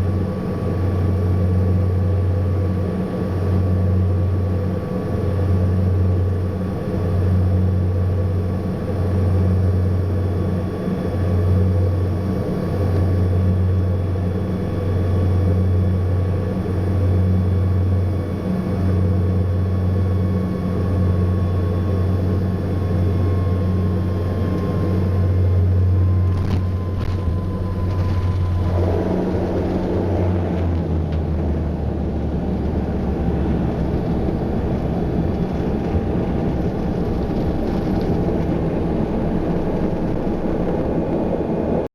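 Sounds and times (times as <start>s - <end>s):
faint whine: 0.0s - 41.9s
propeller throb: 0.0s - 41.9s
turboprop engines droning in cabin: 0.0s - 41.9s.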